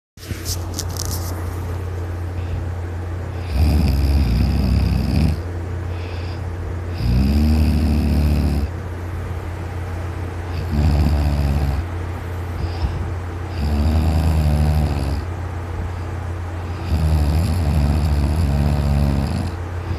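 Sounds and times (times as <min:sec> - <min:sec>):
steady low hum: 0:00.2 - 0:19.9
man snoring loudly: 0:03.3 - 0:08.8, 0:10.5 - 0:11.9, 0:12.6 - 0:15.3, 0:16.6 - 0:19.9.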